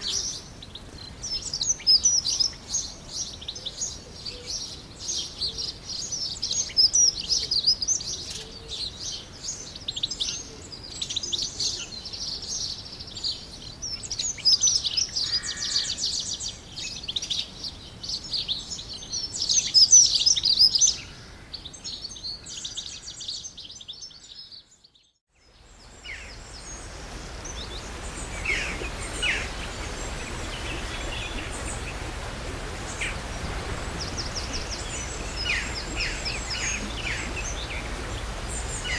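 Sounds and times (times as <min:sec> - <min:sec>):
scattered bird calls: 0:00.0 - 0:25.0, 0:25.6 - 0:38.9
songbirds chirping and trilling: 0:00.0 - 0:38.9
steady rushing noise: 0:25.8 - 0:38.9.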